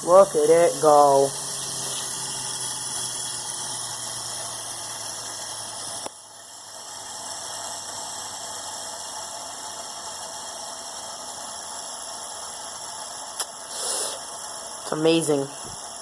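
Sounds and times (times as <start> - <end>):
fidget spinner whirring: 0.0 - 16.0
compressed air hissing: 0.1 - 6.0, 13.4 - 15.9.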